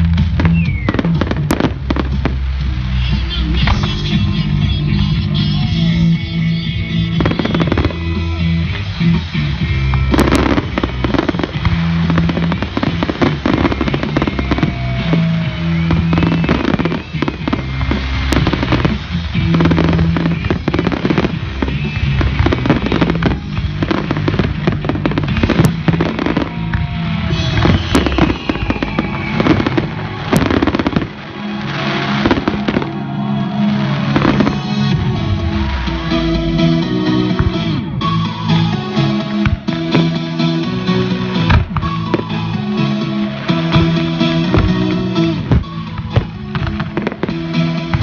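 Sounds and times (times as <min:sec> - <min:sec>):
fireworks whistles: 0:00.0 - 0:36.2, 0:37.5 - 0:48.0
fireworks bangs and crackles: 0:00.0 - 0:48.0
loud music: 0:00.0 - 0:48.0.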